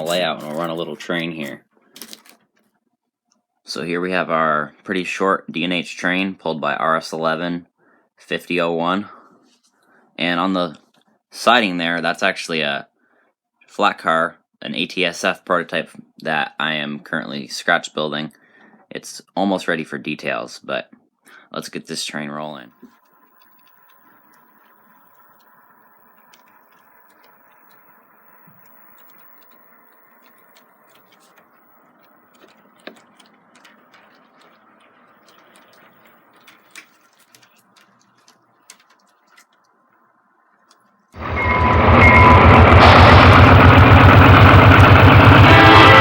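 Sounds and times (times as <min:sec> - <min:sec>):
model train motor hum: 0:22.7 - 0:36.5, 0:41.2 - 0:46.0
wheels clicking on track: 0:22.8 - 0:39.5, 0:41.2 - 0:46.0
loud guitar music: 0:41.2 - 0:46.0.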